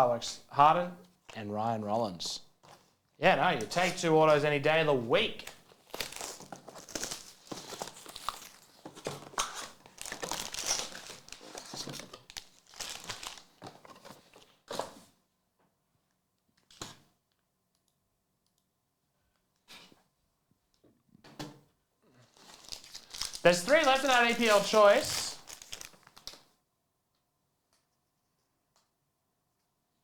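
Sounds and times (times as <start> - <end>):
plastic wrappers crinkling and tearing: 5.4 - 14.5, 22.2 - 26.4.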